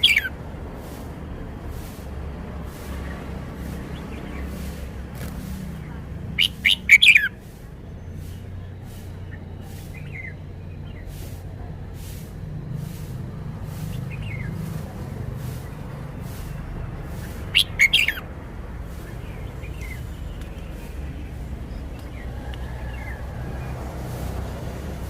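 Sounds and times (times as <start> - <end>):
bird singing whistled notes: 0.0 - 0.4, 6.4 - 11.2, 17.3 - 18.2
steady low rumble: 0.0 - 25.0.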